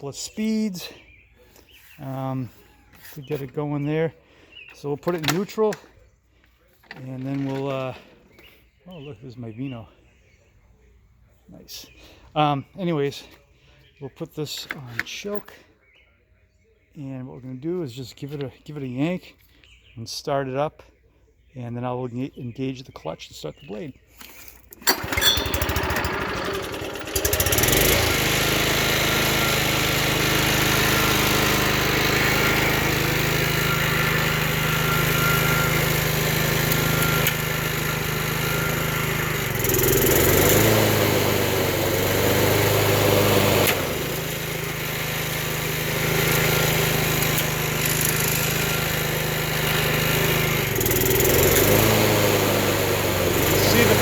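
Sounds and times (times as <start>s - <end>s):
lawn mower engine running: 0.2s - 9.1s, 24.2s - 54.0s
pull cord yank: 5.0s - 5.8s, 24.6s - 27.8s.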